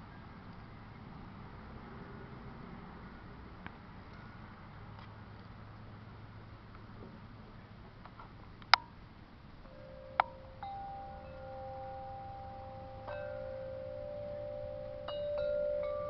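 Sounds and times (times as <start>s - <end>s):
wind chimes ringing: 9.7s - 16.0s.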